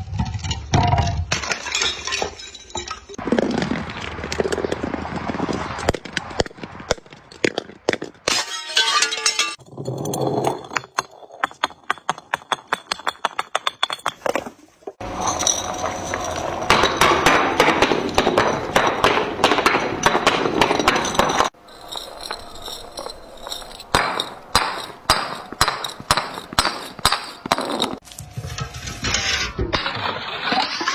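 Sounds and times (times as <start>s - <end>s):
glass crushing and breaking: 0.1s - 3.6s, 7.3s - 14.4s, 15.0s - 28.0s.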